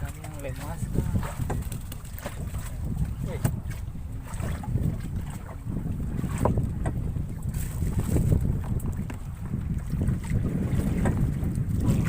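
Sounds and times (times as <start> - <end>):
water lapping against boat: 0.0 - 12.0
wind rumbling on microphone: 0.0 - 12.0.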